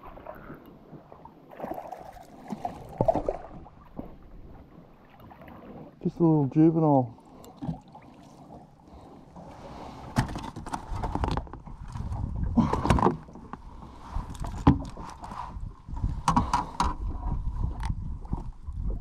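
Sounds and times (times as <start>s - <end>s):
knocks and clatter in boat: 2.6s - 4.7s, 9.3s - 19.0s.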